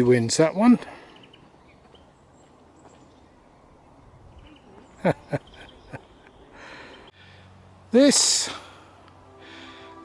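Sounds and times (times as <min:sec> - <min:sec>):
small birds chirping faintly: 0:00.0 - 0:08.0.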